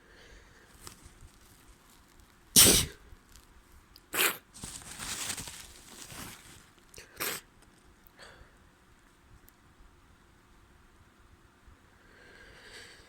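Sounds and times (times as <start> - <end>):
person blowing nose: 2.6 - 3.0, 4.1 - 4.5, 7.1 - 7.4
person sneezing: 2.6 - 3.0, 4.1 - 4.5, 7.0 - 7.5.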